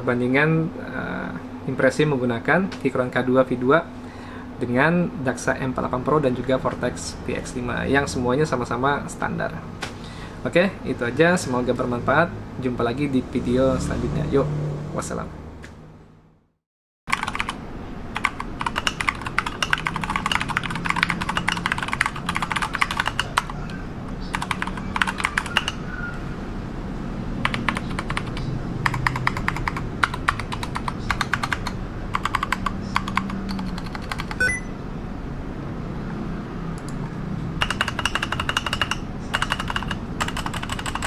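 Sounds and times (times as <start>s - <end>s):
mechanical keyboard key clicks: 18.2s - 23.6s, 37.6s - 41.0s.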